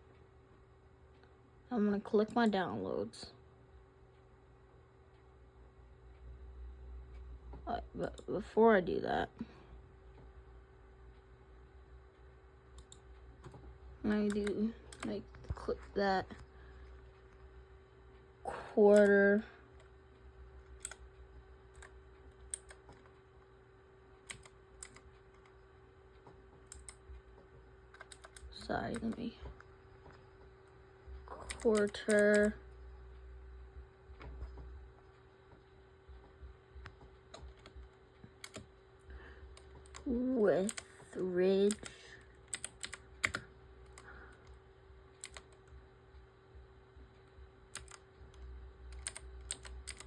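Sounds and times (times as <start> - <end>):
faint steady hum: 0.0 - 50.0
keyboard keystrokes: 24.3 - 25.5, 27.9 - 29.3, 36.8 - 38.7, 42.5 - 44.0, 45.2 - 45.6, 47.7 - 48.0, 48.9 - 50.0.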